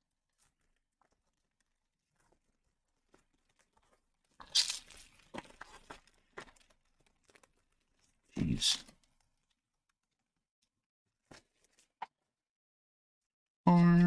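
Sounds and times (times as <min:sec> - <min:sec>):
foil pack crinkling: 0:03.0 - 0:08.2
faint handling ticks: 0:03.8 - 0:05.8
foil wrapper tearing: 0:04.4 - 0:05.7.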